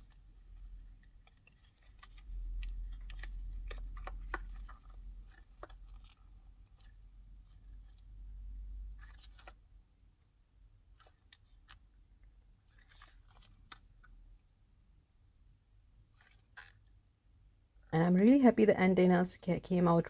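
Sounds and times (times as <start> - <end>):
resin peeling from silicone molds: 0.0 - 9.7, 16.1 - 17.0.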